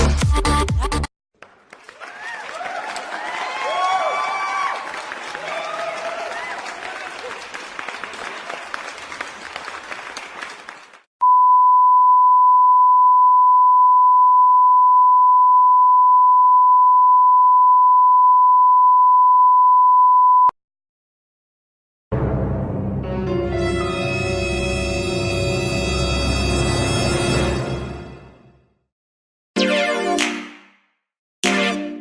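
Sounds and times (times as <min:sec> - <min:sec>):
applause and crowd noise: 0:01.4 - 0:11.1
loud high censor beep: 0:11.2 - 0:20.5.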